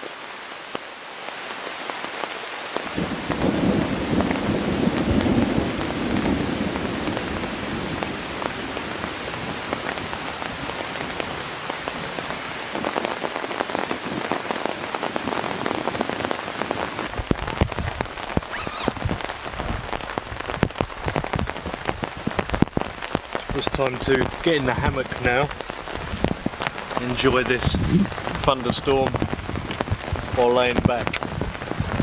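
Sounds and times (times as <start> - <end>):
heavy rain on a tarp: 0.0 - 32.0
thunder rumble: 2.9 - 9.0, 23.5 - 30.4
big drops hitting tarp: 18.4 - 19.2.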